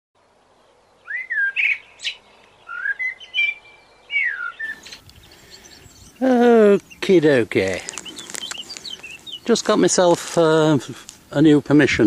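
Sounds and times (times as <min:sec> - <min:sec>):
songbird singing whistled notes: 0:00.6 - 0:09.9.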